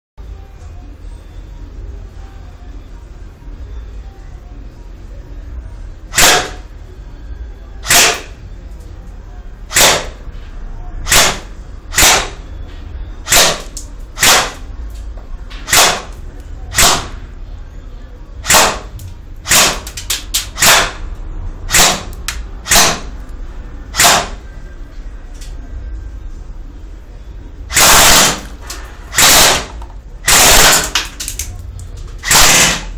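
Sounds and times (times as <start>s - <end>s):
airsoft gun firing: 6.1s - 6.6s, 7.8s - 8.3s, 9.7s - 10.2s, 11.1s - 12.4s, 13.3s - 13.6s, 14.2s - 14.6s, 15.7s - 16.1s, 16.7s - 17.1s, 18.4s - 19.9s, 20.6s - 21.0s, 21.7s - 23.1s, 24.0s - 24.4s, 27.7s - 28.5s, 29.1s - 31.0s, 32.2s - 32.9s.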